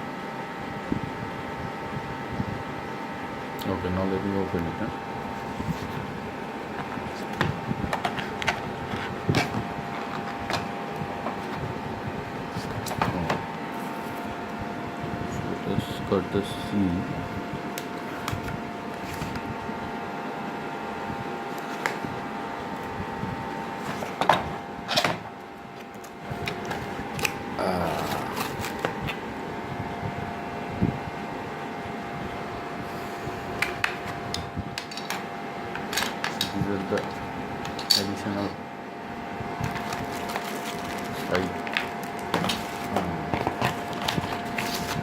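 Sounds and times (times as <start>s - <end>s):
fan hum: 0.0s - 45.0s
packaging rustling: 26.0s - 29.2s, 39.6s - 45.0s.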